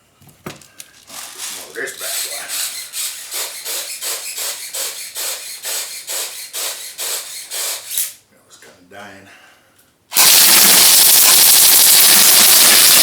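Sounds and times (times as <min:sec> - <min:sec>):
airgun shots hissing puffs: 0:10.1 - 0:13.0.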